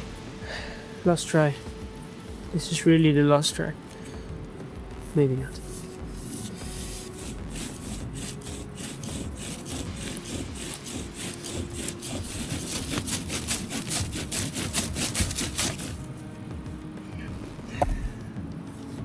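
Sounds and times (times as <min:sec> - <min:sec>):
rhythmic rubbing of wood on wood: 0:04.2 - 0:19.0.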